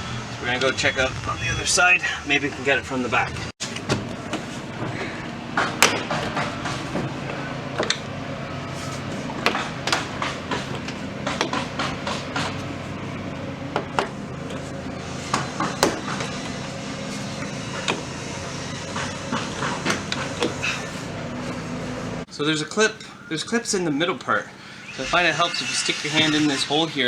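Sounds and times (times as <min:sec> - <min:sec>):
steady low hum: 0:00.0 - 0:05.6.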